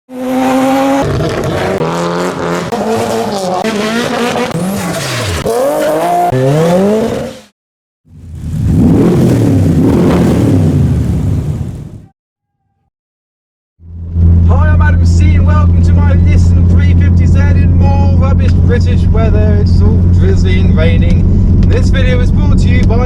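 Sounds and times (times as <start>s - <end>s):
car engines revving and accelerating: 0.1s - 7.5s, 8.1s - 12.0s.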